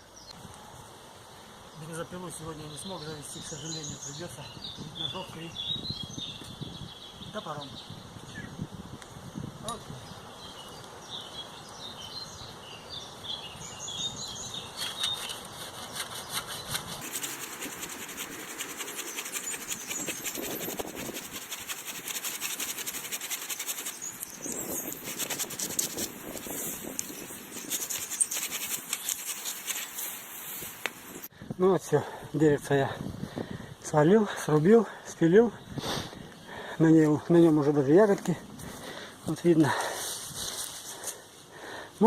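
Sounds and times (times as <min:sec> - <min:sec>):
birds chirping: 0:01.7 - 0:08.6, 0:09.7 - 0:31.3
hand saw cutting wood: 0:14.8 - 0:30.2.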